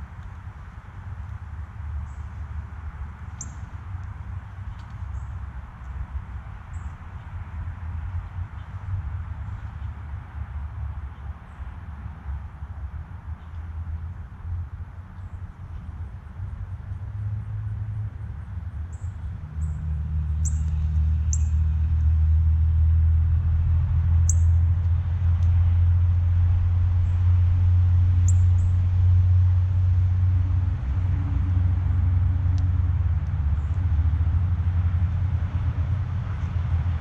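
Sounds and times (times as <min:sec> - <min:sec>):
low steady rumble: 0:00.0 - 0:37.0
small birds chirping: 0:03.3 - 0:03.7, 0:18.9 - 0:21.7, 0:24.3 - 0:24.5, 0:28.2 - 0:28.8.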